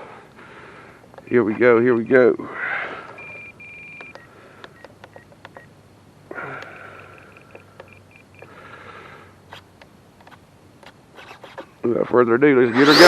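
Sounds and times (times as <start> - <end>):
short electronic beeps: 3.2 - 4.2
small sharp clicks: 4.0 - 5.7.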